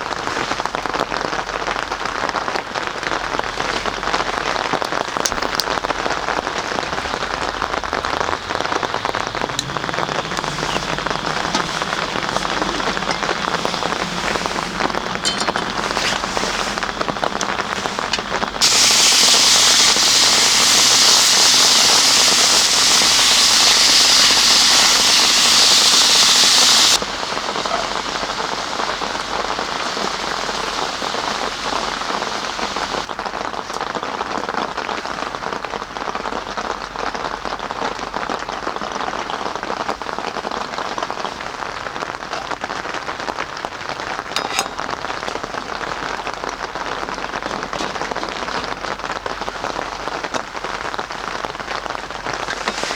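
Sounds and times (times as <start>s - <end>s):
steady rain falling: 0.0s - 52.9s
loud high hiss: 8.3s - 33.1s.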